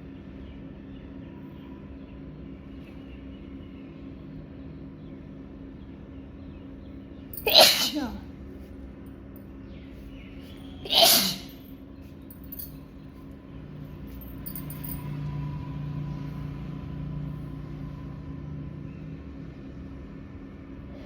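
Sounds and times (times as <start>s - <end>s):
person sneezing: 7.4s - 8.2s, 10.9s - 11.6s.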